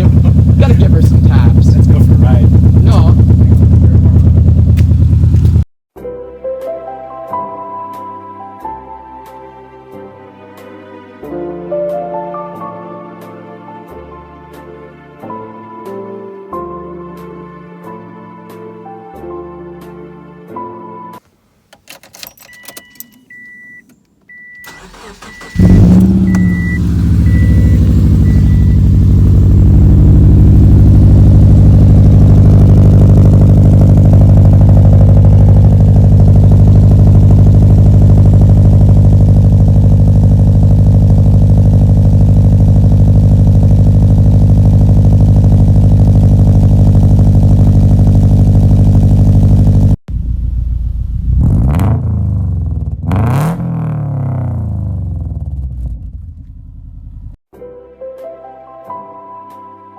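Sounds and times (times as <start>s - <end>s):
car engine starting and idling: 0.0s - 5.6s, 21.2s - 57.4s
car warning chime beeping: 21.9s - 29.8s.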